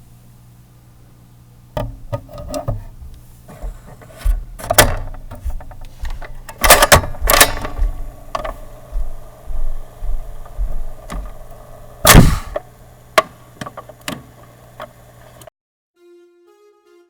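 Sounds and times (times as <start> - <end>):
typewriter clacking: 4.7 - 8.9.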